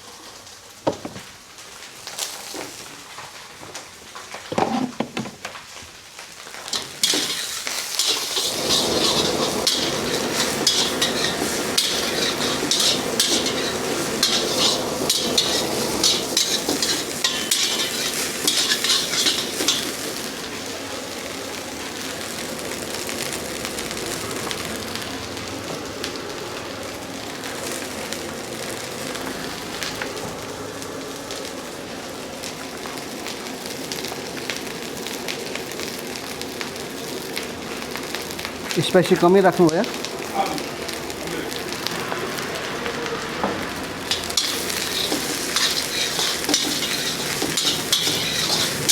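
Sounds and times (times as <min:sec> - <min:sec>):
food sizzling in a wok: 0:00.0 - 0:48.9
metal ladle scraping wok: 0:06.7 - 0:20.3, 0:44.1 - 0:48.9.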